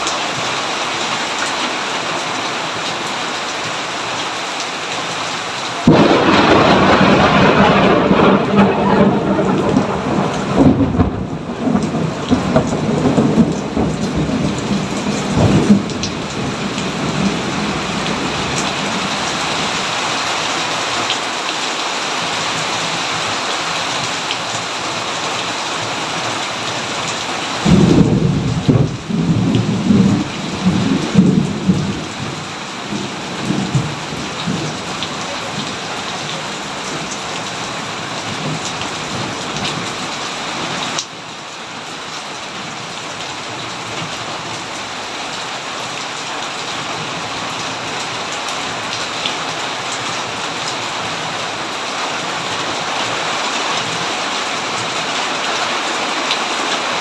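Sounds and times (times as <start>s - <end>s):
steady rain: 0.0s - 57.0s
thunder rumbling: 5.8s - 19.7s, 27.6s - 39.9s.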